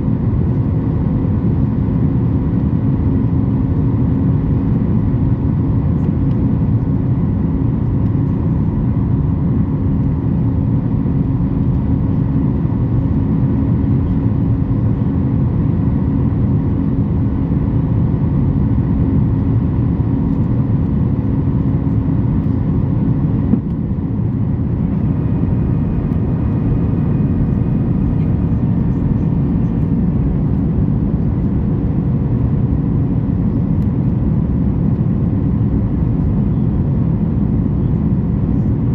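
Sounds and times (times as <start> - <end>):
airplane cabin engine hum: 0.0 - 38.9
steady tones: 24.5 - 31.4.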